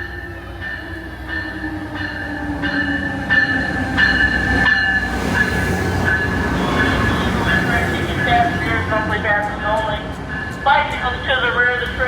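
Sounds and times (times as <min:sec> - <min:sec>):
train rumble: 0:00.0 - 0:12.0
high-pitched brake squeal: 0:06.4 - 0:07.6.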